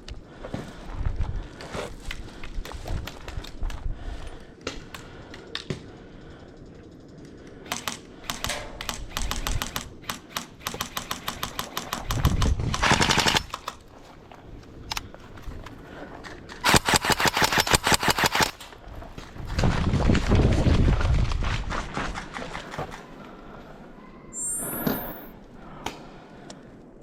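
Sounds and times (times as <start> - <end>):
airsoft guns firing: 7.6 - 13.8, 16.6 - 18.6.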